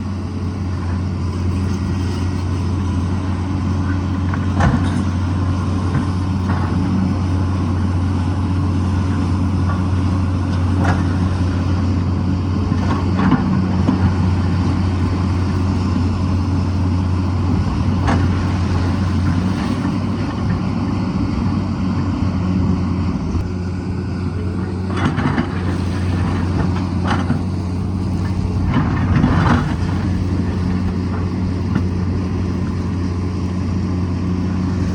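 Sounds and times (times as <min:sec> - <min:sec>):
excavator diesel engine running: 0:00.0 - 0:34.9.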